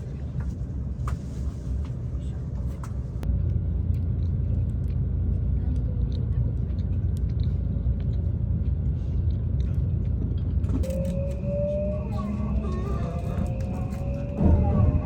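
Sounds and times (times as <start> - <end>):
vehicle rumble in motion: 0.0 - 15.0.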